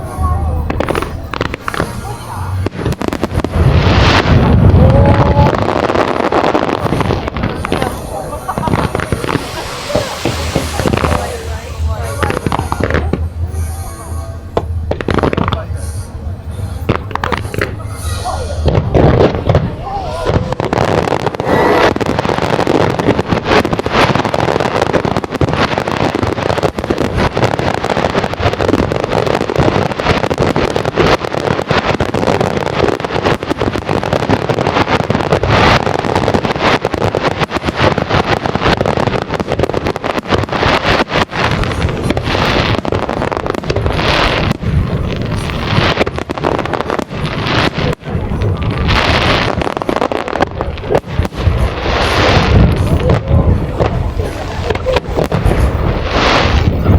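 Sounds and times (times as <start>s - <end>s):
fireworks bangs and crackles: 0.0s - 56.9s.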